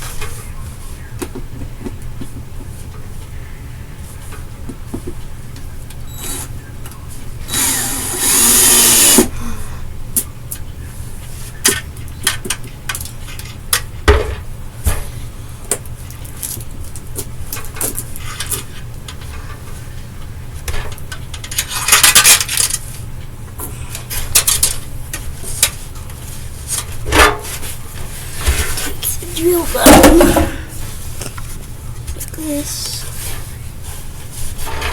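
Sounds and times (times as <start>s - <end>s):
steady low hum: 0.0s - 34.9s
power drill running: 7.5s - 9.3s.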